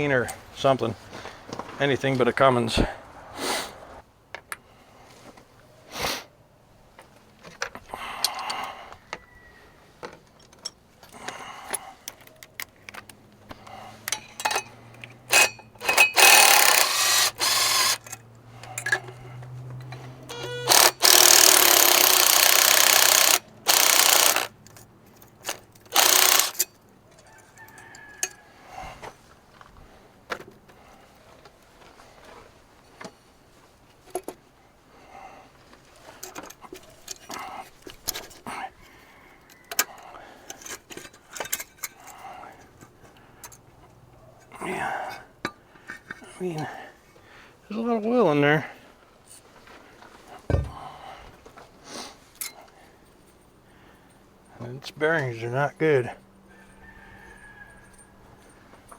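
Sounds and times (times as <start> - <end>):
hand tools clicking on metal: 7.6 - 8.8, 10.4 - 28.4, 39.5 - 43.6
pneumatic tool hissing bursts: 15.3 - 18.0, 20.3 - 24.5, 25.9 - 26.6.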